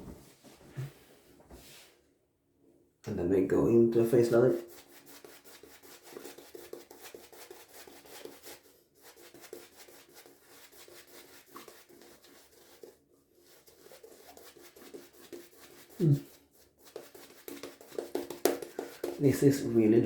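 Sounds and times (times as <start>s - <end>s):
shaving brush rubbing lather: 4.0s - 20.0s.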